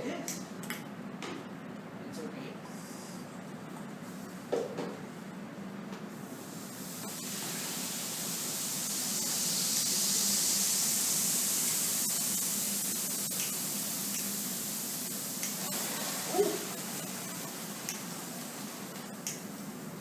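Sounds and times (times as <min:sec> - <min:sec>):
liquid hissing on a hot griddle: 0:06.2 - 0:20.0.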